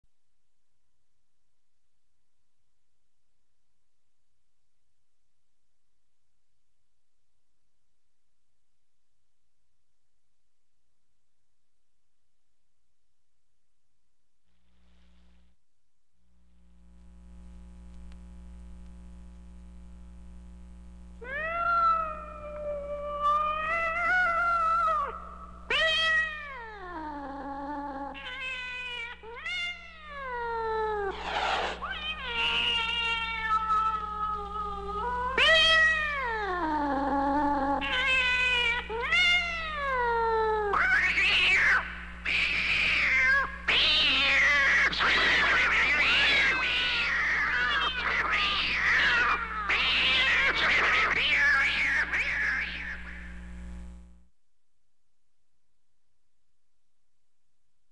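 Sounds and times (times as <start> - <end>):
steady low hum: 16.1 - 21.3, 50.7 - 54.3
cats yowling: 21.2 - 53.2
cats screeching: 27.8 - 36.4, 37.6 - 53.2.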